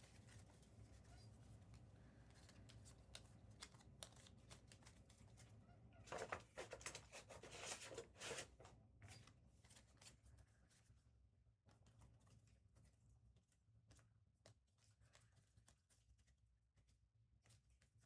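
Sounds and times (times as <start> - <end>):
trading cards rustling and clicking: 2.3 - 5.4.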